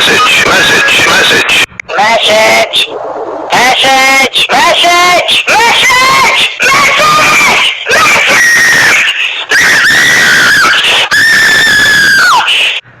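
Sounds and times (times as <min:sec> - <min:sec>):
screaming ringtone: 0:05.5 - 0:12.7.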